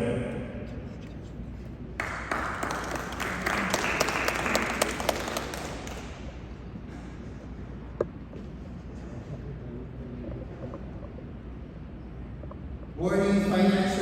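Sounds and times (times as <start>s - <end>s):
small audience applauding: 2.0s - 6.5s.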